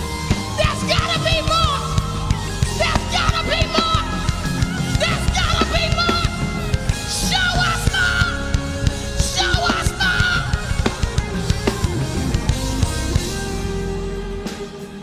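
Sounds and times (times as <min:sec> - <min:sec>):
driving drum beat: 0:00.0 - 0:15.0
worship band music: 0:00.0 - 0:15.0
person singing loudly: 0:00.4 - 0:11.3.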